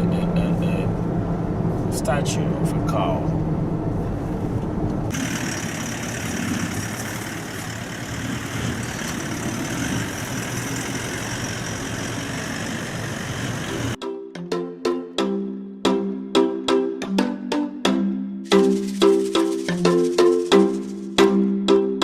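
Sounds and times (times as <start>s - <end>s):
vehicle engine and road noise: 0.0s - 14.0s
marimba-like percussive music: 14.0s - 22.0s.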